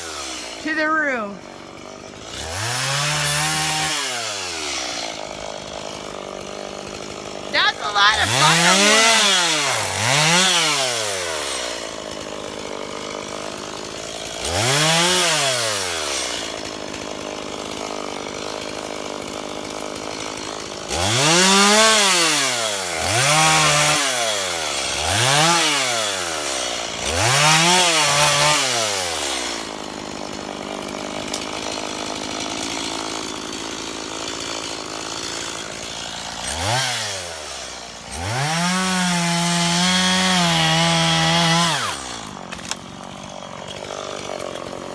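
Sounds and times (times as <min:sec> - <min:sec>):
chainsaw revving: 0:00.0 - 0:44.9.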